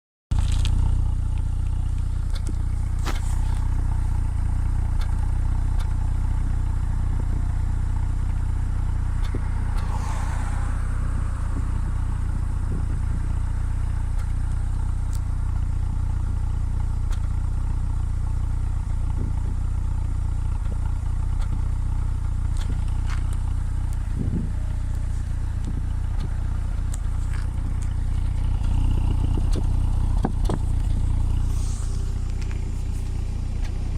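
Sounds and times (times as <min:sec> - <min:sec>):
car engine idling: 0:00.3 - 0:33.9
engine misfire puffs: 0:00.4 - 0:33.9.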